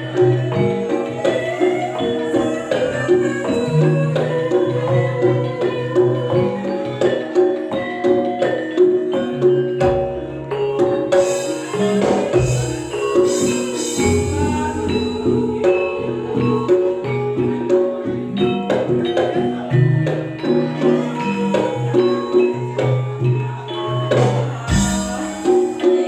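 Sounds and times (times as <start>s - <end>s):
metallophones ringing: 0.0s - 26.0s
steady drum beat: 9.8s - 26.0s.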